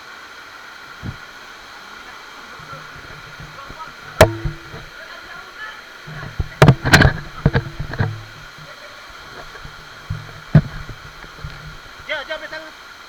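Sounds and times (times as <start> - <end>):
waterfall rushing: 0.0 - 13.0
sharp knocks: 2.7 - 4.9, 6.1 - 8.7, 9.4 - 12.1.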